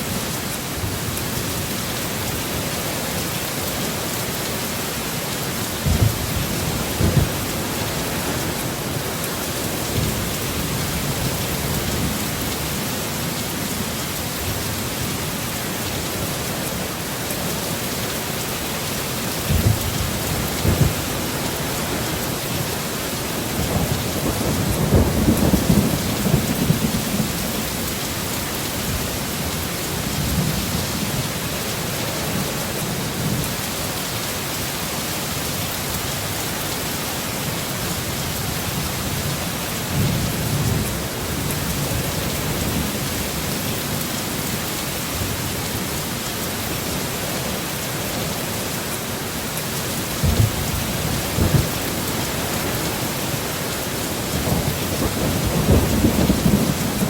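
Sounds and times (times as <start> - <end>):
heavy rain: 0.0 - 57.0
thunder rolling: 19.5 - 22.2, 50.2 - 51.9, 54.3 - 57.0.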